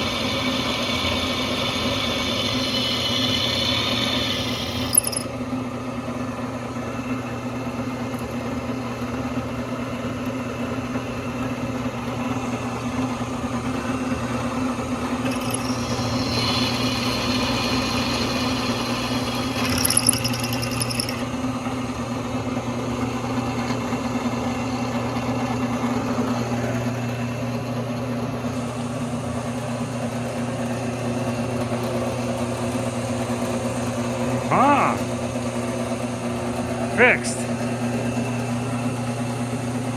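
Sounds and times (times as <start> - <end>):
drill press motor humming: 0.0 - 5.4, 12.0 - 21.6.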